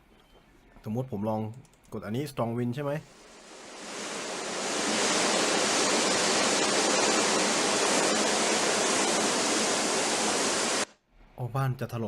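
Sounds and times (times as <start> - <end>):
strong wind rushing: 3.4 - 10.9.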